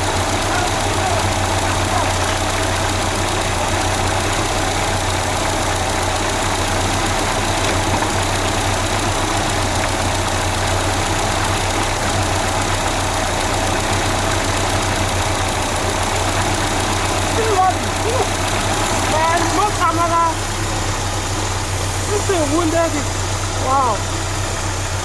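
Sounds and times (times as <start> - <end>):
car engine idling: 0.0 - 25.0.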